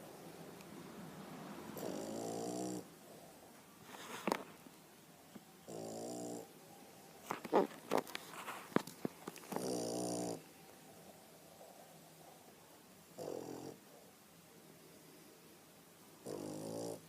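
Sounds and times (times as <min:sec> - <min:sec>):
dog snoring: 0:01.8 - 0:02.9, 0:05.7 - 0:06.5, 0:09.5 - 0:10.5, 0:13.2 - 0:13.8, 0:16.2 - 0:17.0.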